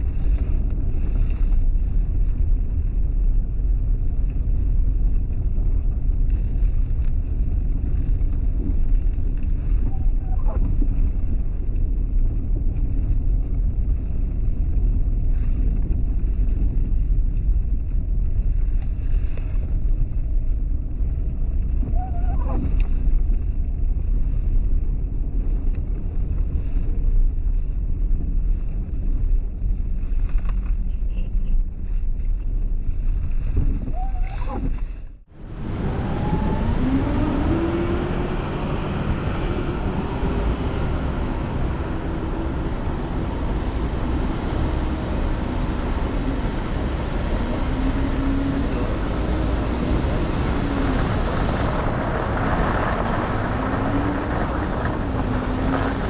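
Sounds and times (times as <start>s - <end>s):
low rumble of vehicles: 0.0s - 56.0s.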